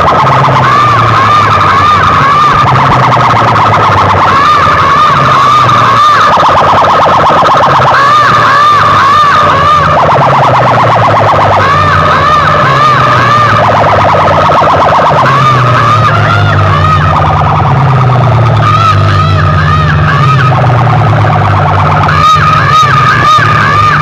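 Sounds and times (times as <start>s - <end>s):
deep bass drone: 0.0s - 24.0s
siren-style warbling wails: 0.0s - 24.0s.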